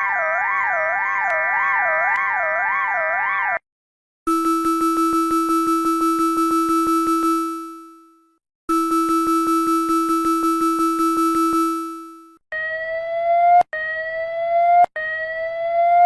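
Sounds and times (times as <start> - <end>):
pulsing buzzy alarm tone: 4.3 - 8.1, 8.7 - 13.2
rising alarm tone: 4.3 - 16.0.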